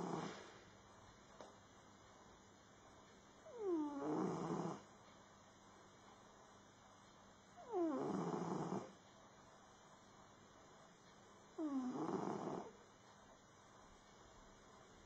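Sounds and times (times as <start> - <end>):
cat snoring: 0.0 - 0.4, 3.5 - 4.9, 7.6 - 9.0, 11.6 - 12.8.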